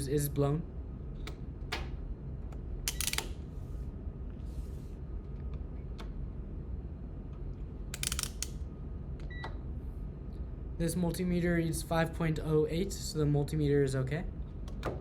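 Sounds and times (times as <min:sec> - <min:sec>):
steady low hum: 0:00.0 - 0:15.0
rotary knob clicking: 0:02.9 - 0:03.4, 0:08.0 - 0:08.6.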